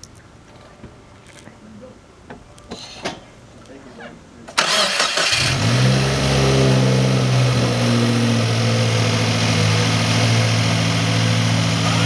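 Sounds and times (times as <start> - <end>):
car engine idling: 4.2 - 12.0.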